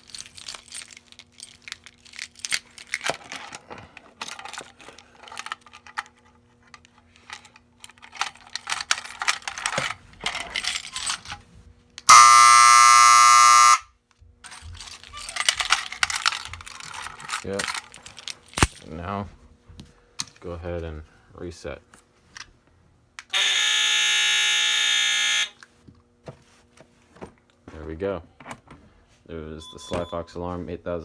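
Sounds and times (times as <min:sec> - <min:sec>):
keys jangling: 0:00.0 - 0:06.0, 0:07.8 - 0:11.4, 0:14.4 - 0:18.9
fire alarm buzzing: 0:12.1 - 0:14.0, 0:23.3 - 0:25.6.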